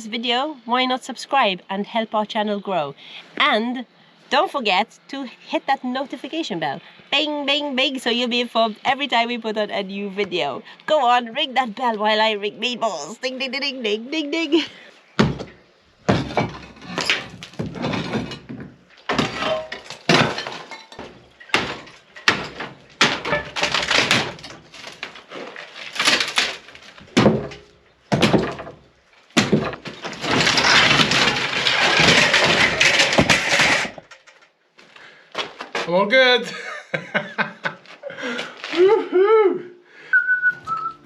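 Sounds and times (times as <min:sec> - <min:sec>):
stones knocking and clattering: 0:15.2 - 0:34.5
rubble pouring down: 0:16.0 - 0:34.4.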